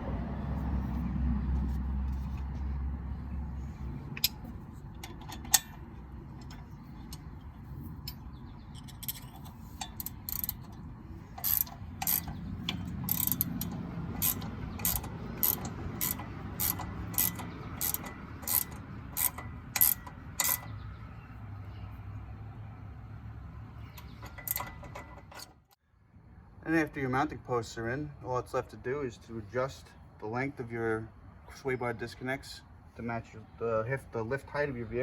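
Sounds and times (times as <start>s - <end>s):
hand ratchet clicking: 8.8s - 10.8s, 11.4s - 20.7s, 24.0s - 25.4s.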